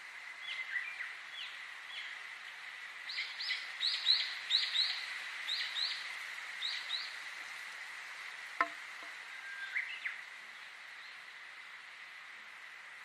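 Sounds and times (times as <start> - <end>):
songbird chirps: 8.6 - 11.7.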